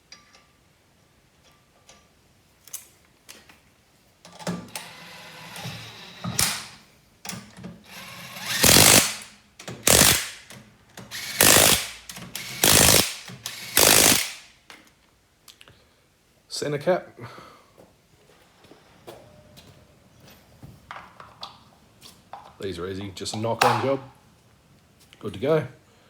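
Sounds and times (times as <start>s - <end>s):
impact wrench hammering: 8.4s - 14.5s.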